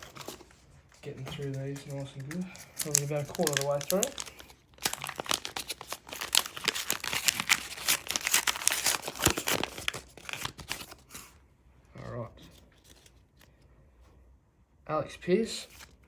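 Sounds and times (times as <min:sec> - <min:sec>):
wrapper crinkling and tearing: 0:01.2 - 0:11.4, 0:12.7 - 0:13.4.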